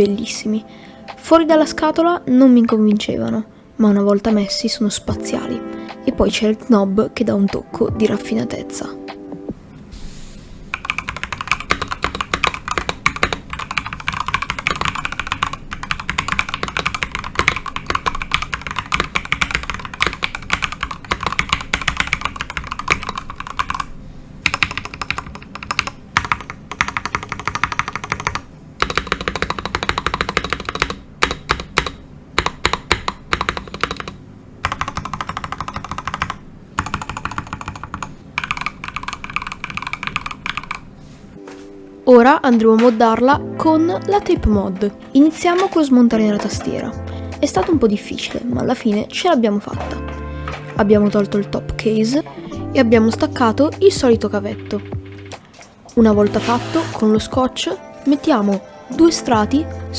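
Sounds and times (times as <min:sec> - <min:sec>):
fast typing on mechanical keyboard: 0:10.7 - 0:40.9, 0:54.3 - 0:55.3.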